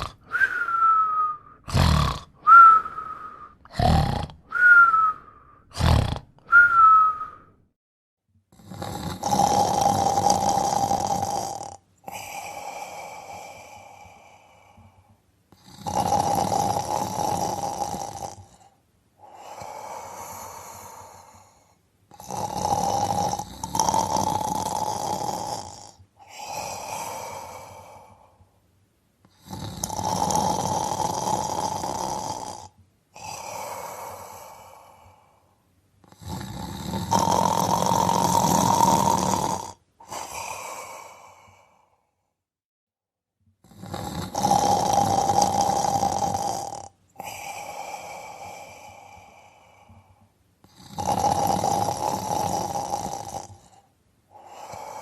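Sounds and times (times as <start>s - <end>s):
person snoring: 0.0s - 7.6s, 8.5s - 28.5s, 29.2s - 42.5s, 43.6s - 55.0s
whistling breath: 0.2s - 1.7s, 2.4s - 3.7s, 4.5s - 5.8s, 6.5s - 7.7s.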